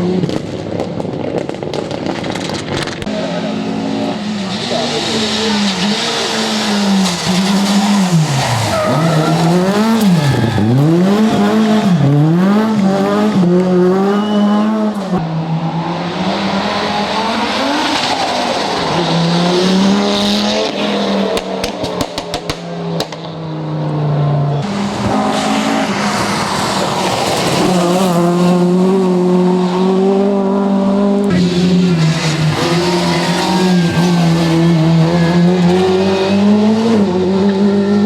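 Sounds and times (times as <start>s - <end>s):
rally car engine revving: 0.0s - 38.0s
exhaust pops and crackles: 0.1s - 3.2s, 21.3s - 23.4s.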